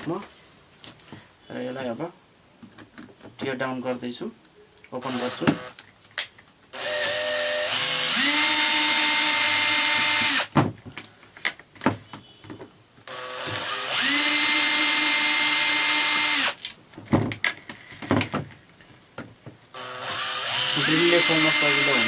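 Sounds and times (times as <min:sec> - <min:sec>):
electric drill motor whining: 0:05.0 - 0:05.8, 0:06.8 - 0:10.5, 0:13.1 - 0:16.6, 0:19.7 - 0:22.0
clicks and knocks of parts handled: 0:05.8 - 0:07.2, 0:10.7 - 0:13.1.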